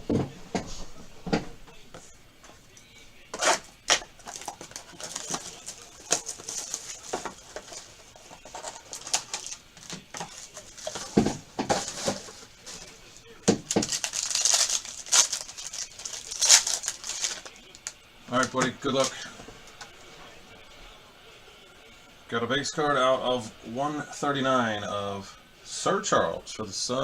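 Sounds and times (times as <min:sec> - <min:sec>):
wrapping crinkling and rustling: 0:03.4 - 0:19.8.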